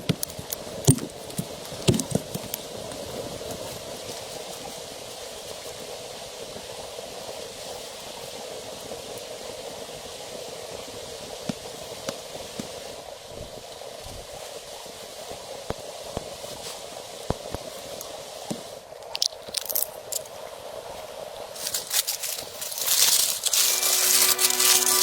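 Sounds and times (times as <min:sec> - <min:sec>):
crackling and rustling: 0:00.0 - 0:04.9, 0:11.5 - 0:25.0.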